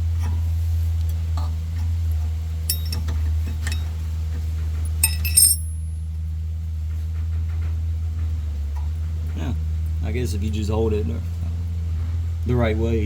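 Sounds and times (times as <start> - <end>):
steady low hum: 2.2 - 4.1, 4.7 - 6.1
metallic clicks of bolt and tool: 2.7 - 3.9, 5.0 - 5.8.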